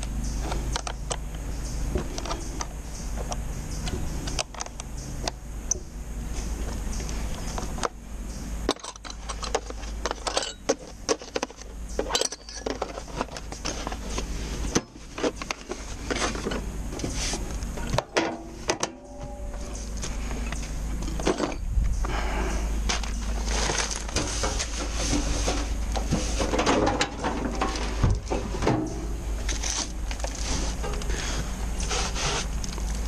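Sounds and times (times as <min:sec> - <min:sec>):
steady low rumble: 0:00.0 - 0:33.0
metal objects clinking: 0:08.7 - 0:14.0.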